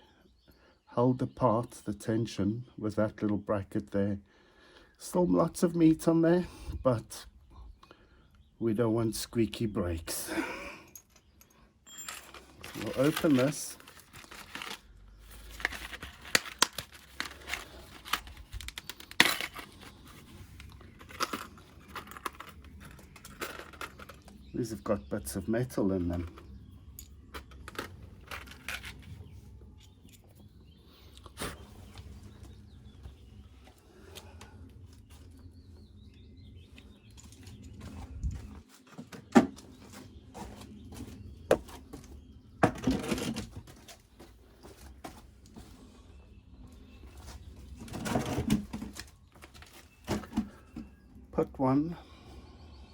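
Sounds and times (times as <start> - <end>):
hands handling brake parts: 10.9 - 24.5, 26.1 - 30.4
packaging rustling: 12.0 - 24.4.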